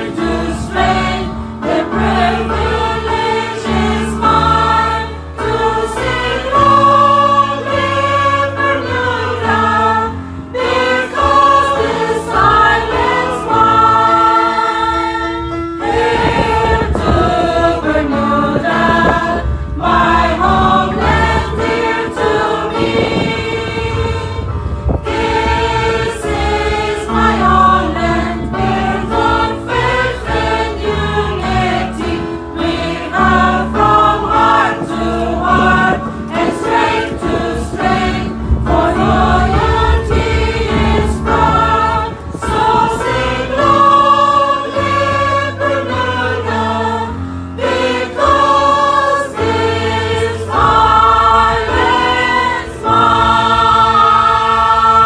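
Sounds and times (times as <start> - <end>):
choir singing in harmony: 0.0 - 55.0
sustained low notes: 15.9 - 44.5.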